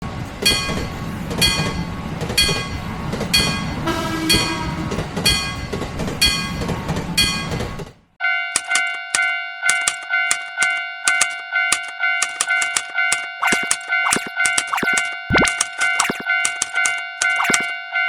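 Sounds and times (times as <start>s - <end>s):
train rumbling: 0.0s - 8.2s
bell striking: 3.4s - 6.6s
train horn tone: 3.8s - 5.1s.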